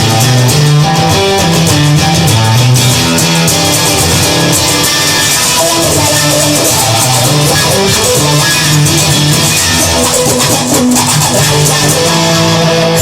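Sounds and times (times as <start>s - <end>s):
bass guitar groove: 0.0s - 13.0s
electric guitar: 0.0s - 13.0s
person singing: 4.9s - 13.0s.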